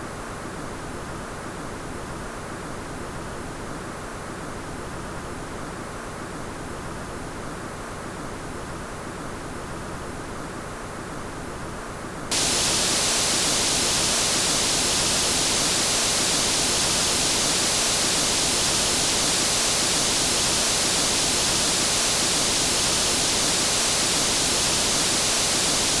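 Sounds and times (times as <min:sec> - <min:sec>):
synthetic hiss: 0:12.3 - 0:26.0.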